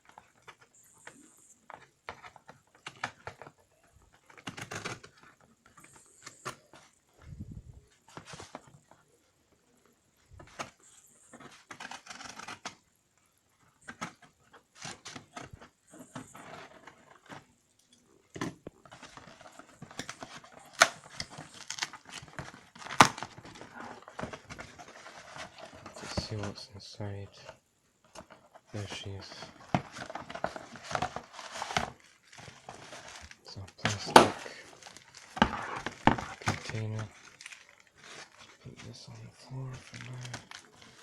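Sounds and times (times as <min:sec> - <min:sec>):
packaging tearing and crinkling: 0:19.0 - 0:26.1, 0:28.8 - 0:41.0.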